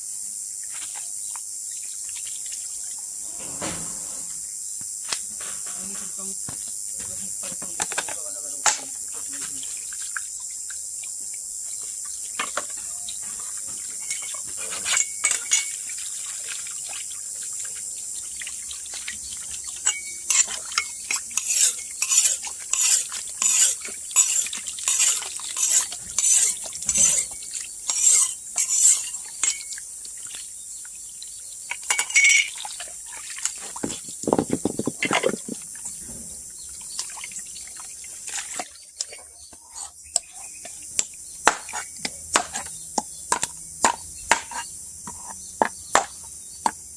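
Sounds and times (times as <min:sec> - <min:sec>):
crickets chirping: 0:00.0 - 0:46.9
metal utensil scraping: 0:19.8 - 0:29.7, 0:39.0 - 0:40.8.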